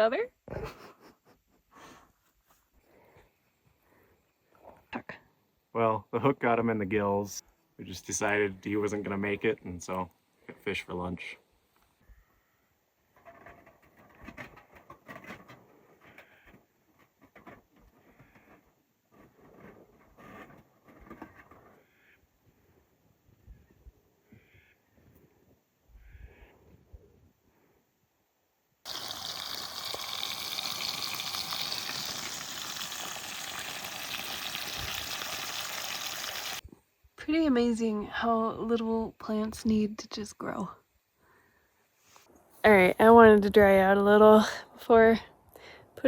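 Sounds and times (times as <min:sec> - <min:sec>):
fish frying in a pan: 0:28.9 - 0:36.6.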